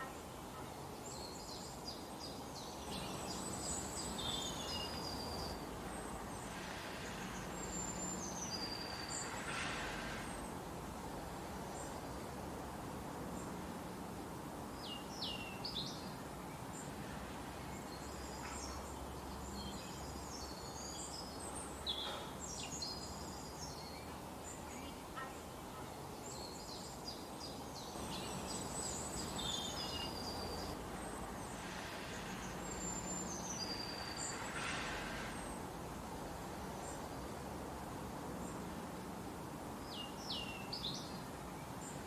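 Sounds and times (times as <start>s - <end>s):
steady background hiss: 0.0s - 42.0s
birds chirping and trilling: 1.0s - 9.6s, 26.2s - 31.6s.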